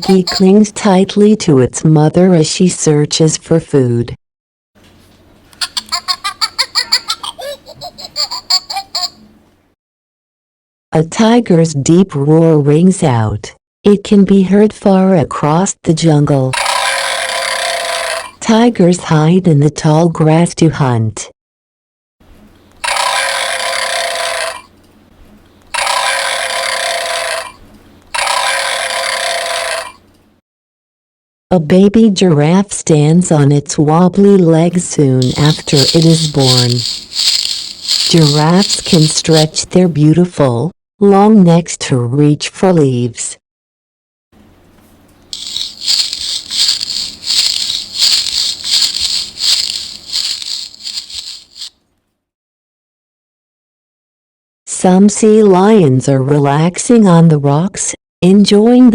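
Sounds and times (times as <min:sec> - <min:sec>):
toy scratchy rustling sound effect: 0:00.0 - 0:00.5, 0:05.7 - 0:09.2, 0:16.6 - 0:18.4, 0:22.8 - 0:24.7, 0:25.7 - 0:30.0, 0:35.2 - 0:39.7, 0:45.3 - 0:51.8
recorded tiger roar on small speaker: 0:22.8 - 0:24.7, 0:25.7 - 0:30.0.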